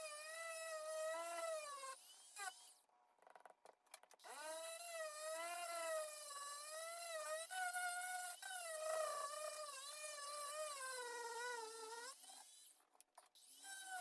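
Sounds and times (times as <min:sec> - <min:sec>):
rotary tool whining: 0:04.2 - 0:12.7, 0:13.3 - 0:14.0.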